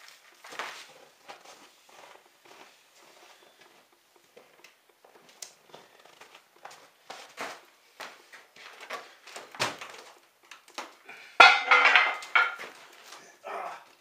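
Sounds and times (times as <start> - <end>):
metal clattering and knocking: 11.4 - 12.8.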